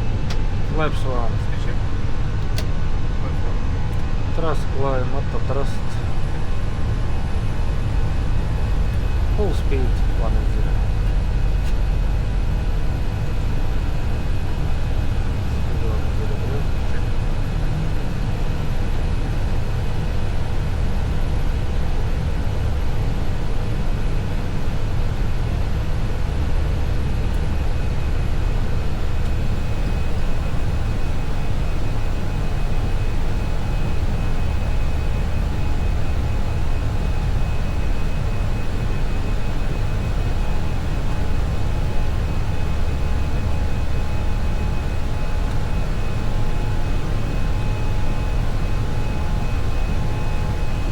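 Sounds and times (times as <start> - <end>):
aircraft engine and airflow rumble: 0.0 - 50.9
faint steady tones: 4.2 - 23.2.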